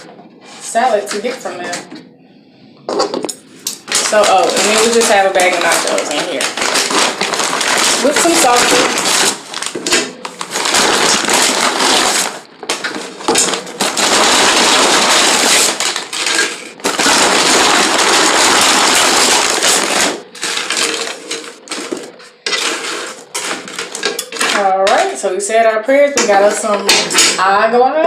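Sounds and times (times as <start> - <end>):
chip bag crinkling and rustling: 3.7 - 24.7.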